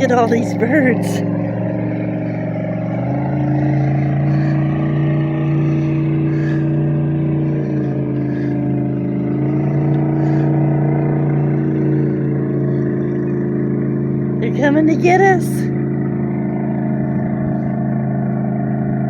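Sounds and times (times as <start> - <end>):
engine humming steadily: 0.0 - 19.0.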